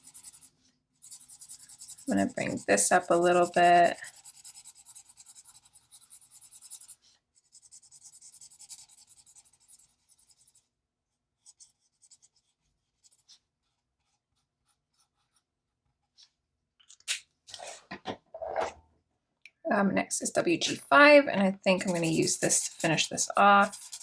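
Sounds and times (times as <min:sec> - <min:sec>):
marker nib scratching paper: 0:00.0 - 0:10.7, 0:11.4 - 0:15.5, 0:21.7 - 0:24.0.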